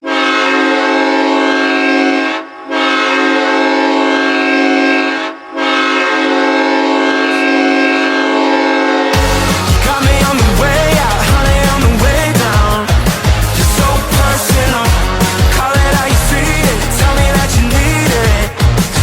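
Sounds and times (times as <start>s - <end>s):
hockey goal horn: 0.0s - 9.6s.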